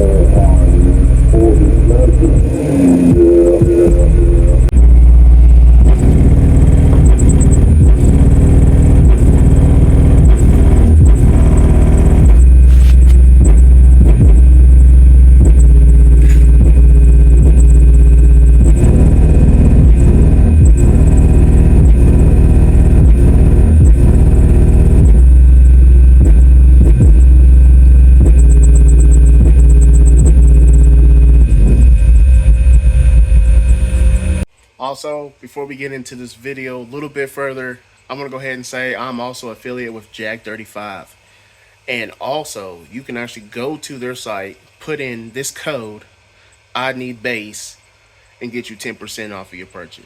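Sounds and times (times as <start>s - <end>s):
subwoofer playing deep bass: 0.0s - 34.5s.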